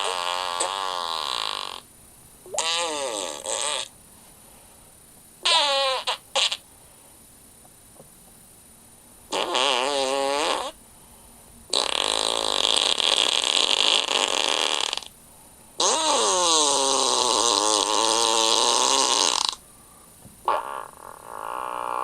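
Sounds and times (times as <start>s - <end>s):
fart sounds: 0.0s - 1.9s, 2.5s - 3.9s, 5.4s - 6.6s, 9.3s - 10.8s, 11.7s - 15.1s, 15.8s - 19.6s, 20.4s - 22.0s.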